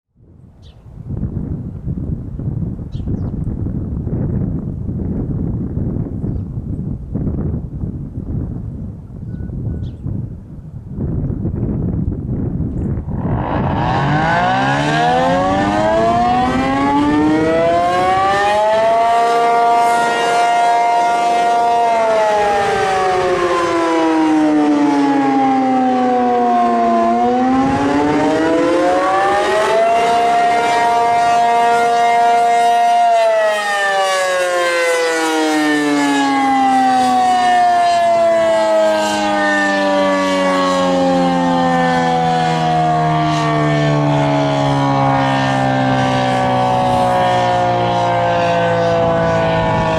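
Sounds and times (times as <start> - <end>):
warning siren wailing: 12.7 - 49.9.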